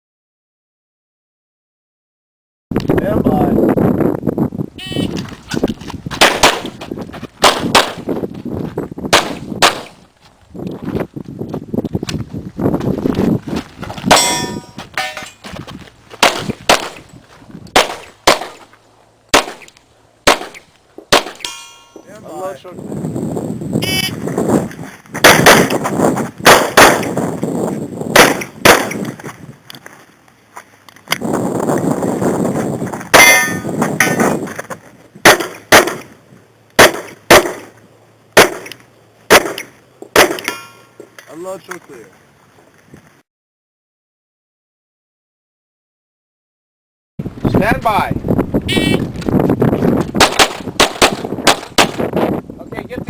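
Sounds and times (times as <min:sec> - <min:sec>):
pistol shots: 0:06.2 - 0:06.8, 0:07.4 - 0:08.0, 0:09.1 - 0:10.0, 0:16.2 - 0:17.0, 0:17.8 - 0:18.6, 0:19.3 - 0:19.7, 0:20.3 - 0:21.6, 0:25.2 - 0:25.8, 0:26.4 - 0:27.2, 0:28.2 - 0:29.0, 0:35.2 - 0:36.1, 0:36.8 - 0:37.7, 0:38.4 - 0:38.7, 0:39.3 - 0:40.6, 0:50.2 - 0:52.0
metallic ringing of steel targets: 0:14.1 - 0:15.4, 0:21.3 - 0:22.1, 0:33.2 - 0:34.2, 0:40.4 - 0:40.9.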